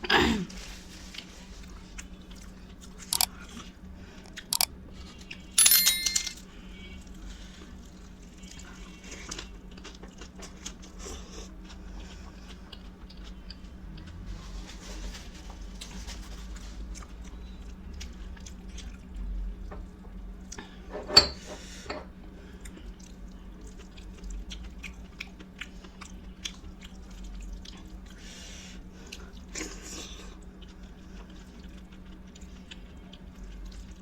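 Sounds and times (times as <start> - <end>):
person chewing food: 2.0 - 4.7, 9.2 - 14.2, 22.5 - 28.2, 29.0 - 34.0.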